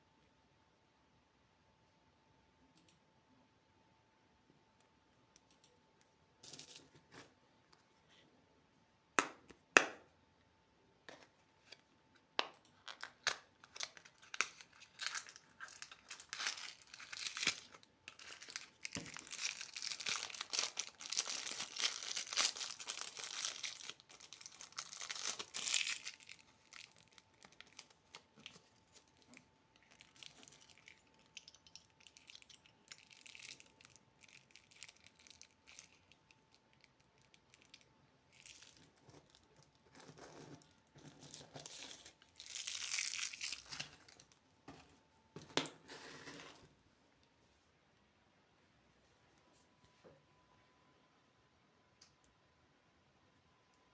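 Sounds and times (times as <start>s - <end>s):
candy wrapper crinkling and tearing: 12.7s - 44.4s.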